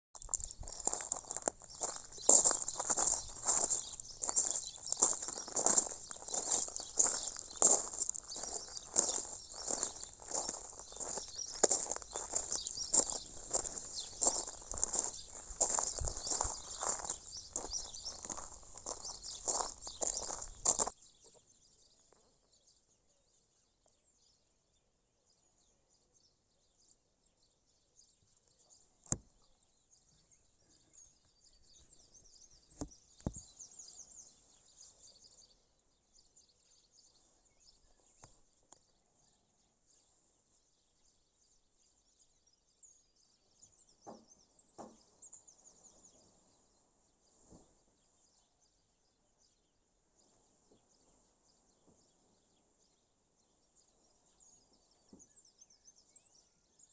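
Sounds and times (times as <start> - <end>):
distant birds chirping: 0.2 - 23.0.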